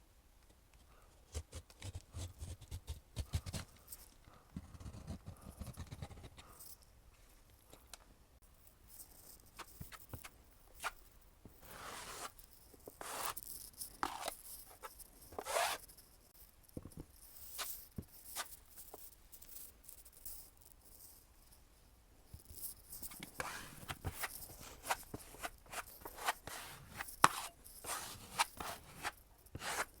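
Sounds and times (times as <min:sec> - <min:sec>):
drywall knife scraping: 0:11.7 - 0:13.4, 0:23.3 - 0:30.0.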